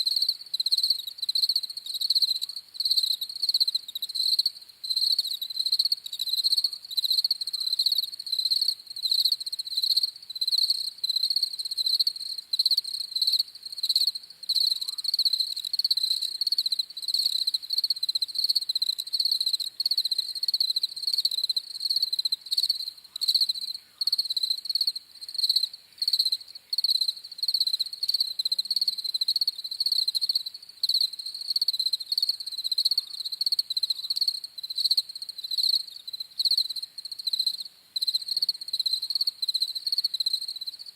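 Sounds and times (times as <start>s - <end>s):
crickets chirping: 0.0s - 40.9s.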